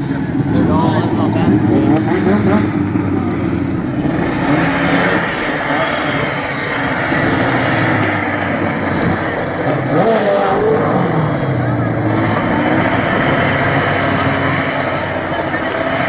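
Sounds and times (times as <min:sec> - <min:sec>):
crowd voices: 0:00.0 - 0:16.0
racing lawn mower engines: 0:00.0 - 0:16.0.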